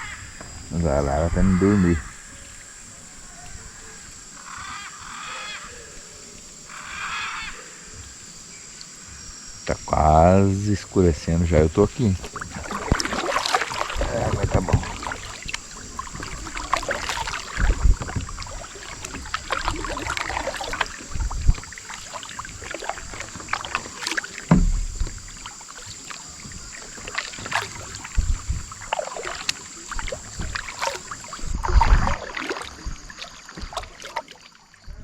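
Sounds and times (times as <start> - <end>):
paddle strokes splashing water: 1.6 - 35.0
dull thumps: 11.7 - 32.1.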